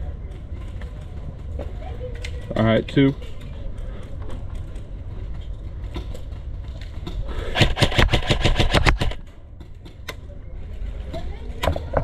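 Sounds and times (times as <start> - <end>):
airsoft gun rapid shots: 7.4 - 9.2.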